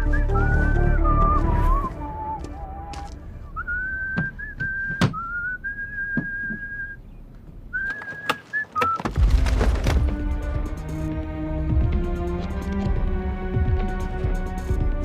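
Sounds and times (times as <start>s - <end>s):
person whistling high note: 0.0s - 7.0s.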